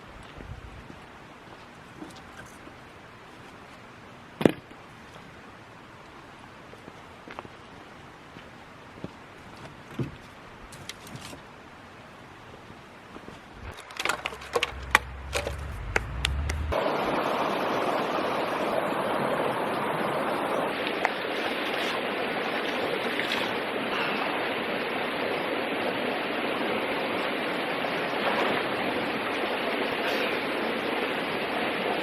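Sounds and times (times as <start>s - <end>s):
low rumble: 13.6s - 17.2s
creek water rushing over rocks: 13.6s - 32.0s.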